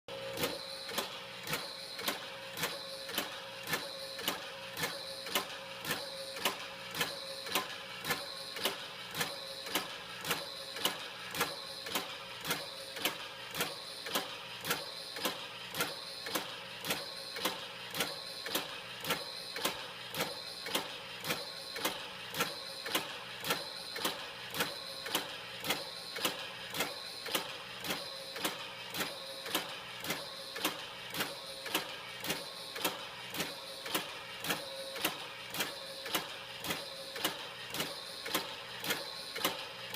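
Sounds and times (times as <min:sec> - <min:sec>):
ice cream maker motor humming: 0:00.1 - 0:39.9
sharp repeating clicks: 0:00.4 - 0:39.9.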